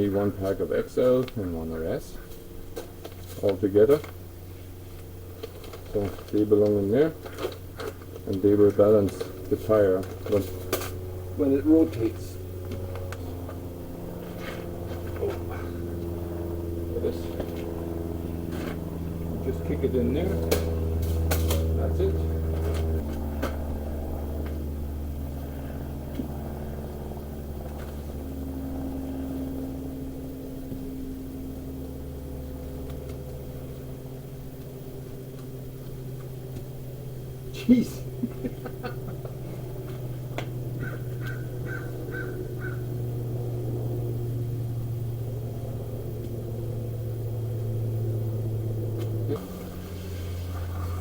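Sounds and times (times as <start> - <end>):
engine humming: 0.0 - 51.0.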